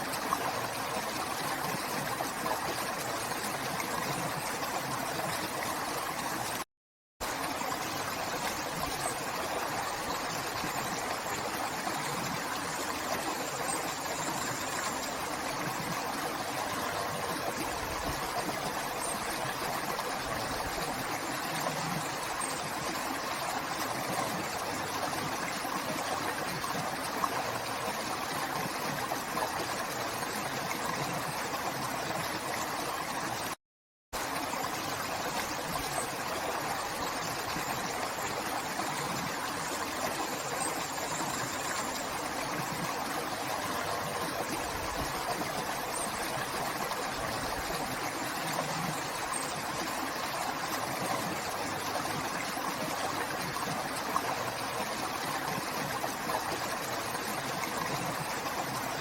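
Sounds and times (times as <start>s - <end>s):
river water flowing: 0.0s - 6.6s, 7.2s - 33.6s, 34.2s - 59.0s.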